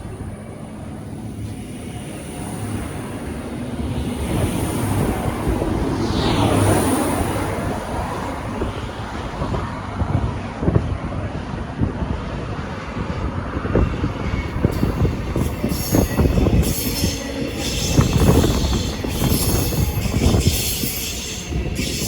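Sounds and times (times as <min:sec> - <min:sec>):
diesel train accelerating: 0:00.0 - 0:22.0.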